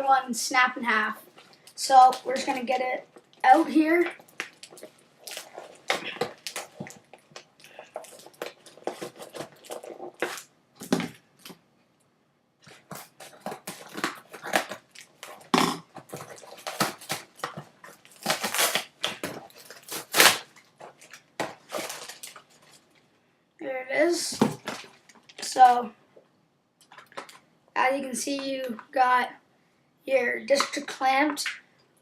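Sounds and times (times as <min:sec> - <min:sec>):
packaging crackling and rustling: 0:04.1 - 0:11.6, 0:12.6 - 0:23.1, 0:24.4 - 0:25.5, 0:26.8 - 0:27.4.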